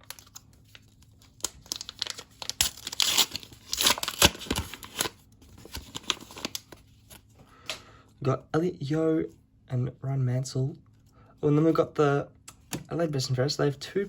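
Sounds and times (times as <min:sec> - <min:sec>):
wrapper tearing and crinkling: 0:00.0 - 0:07.2.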